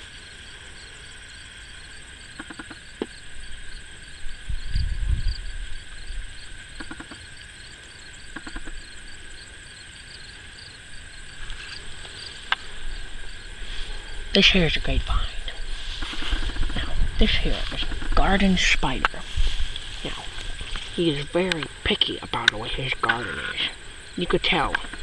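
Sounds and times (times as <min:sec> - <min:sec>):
insect chorus trilling: 0:00.0 - 0:25.0
low rumble: 0:03.4 - 0:06.5, 0:10.9 - 0:24.2.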